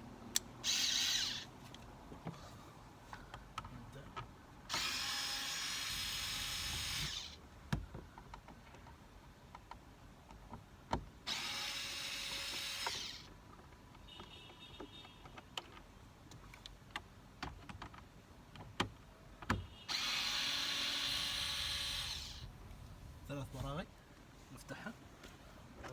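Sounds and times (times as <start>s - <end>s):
cordless drill running: 0.6s - 1.5s, 4.7s - 7.4s, 11.3s - 13.3s, 19.9s - 22.5s.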